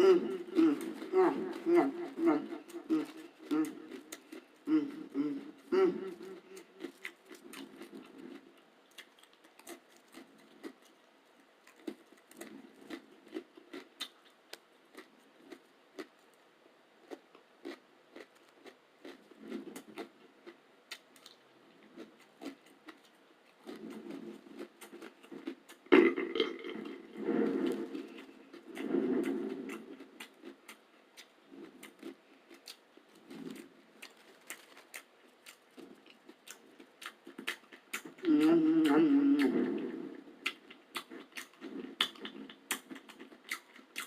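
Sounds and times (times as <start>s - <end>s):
throaty sound: 0.0s - 8.0s, 25.9s - 30.4s, 38.2s - 40.6s
chewing crackers: 0.0s - 44.0s.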